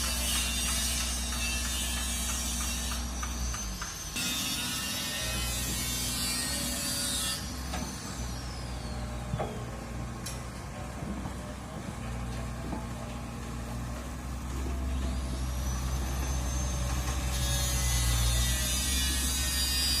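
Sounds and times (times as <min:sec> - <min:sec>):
excavator diesel engine running: 0:08.3 - 0:18.0.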